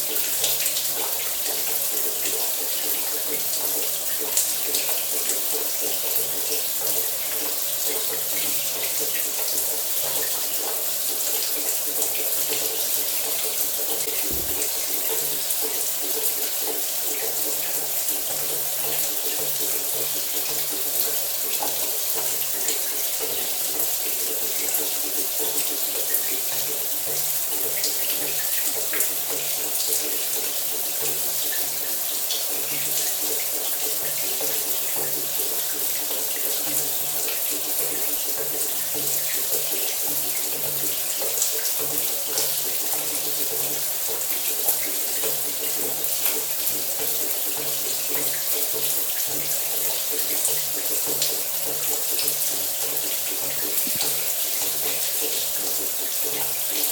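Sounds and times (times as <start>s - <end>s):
shower water hissing: 14.0s - 16.1s, 52.3s - 56.9s.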